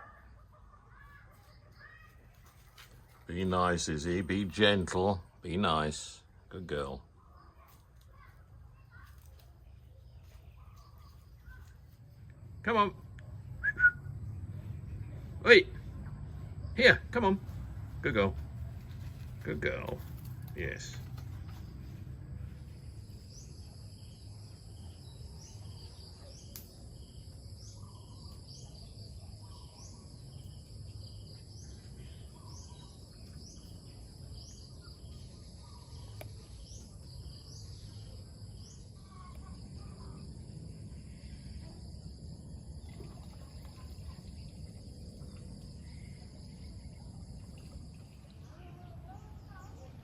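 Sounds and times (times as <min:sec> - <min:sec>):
low rumble: 0:12.1 - 0:16.8.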